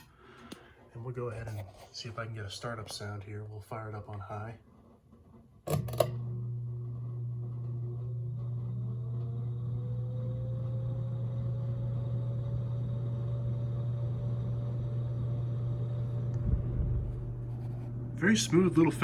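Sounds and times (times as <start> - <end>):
ceiling fan motor humming and whining: 4.0 - 19.0.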